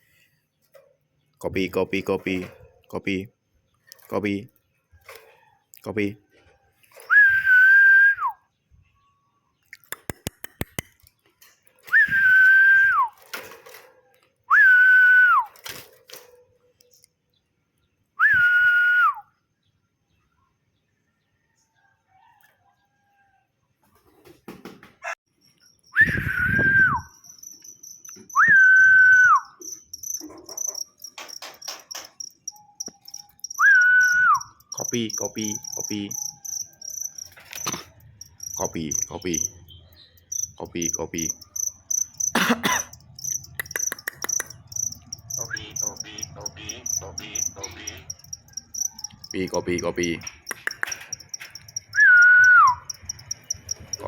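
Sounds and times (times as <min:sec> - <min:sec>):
whistled note sliding down: 0:25.9 - 0:27.2, 0:28.3 - 0:29.6, 0:33.6 - 0:34.6.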